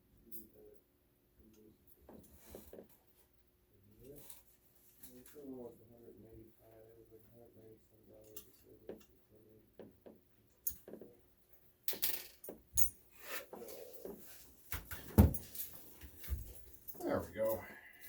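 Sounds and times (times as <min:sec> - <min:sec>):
small hardware clicking and clinking: 0:08.2 - 0:09.1, 0:10.6 - 0:11.2, 0:11.9 - 0:13.0.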